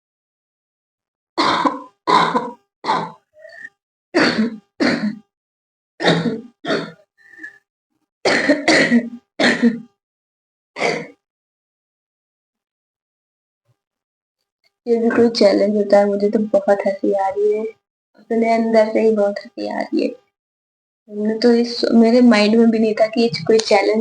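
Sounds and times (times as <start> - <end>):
woman coughing: 1.4 - 3.2, 4.2 - 5.2, 6.0 - 7.0, 8.3 - 9.9, 10.8 - 11.2
faint throaty sounds: 1.4 - 5.2.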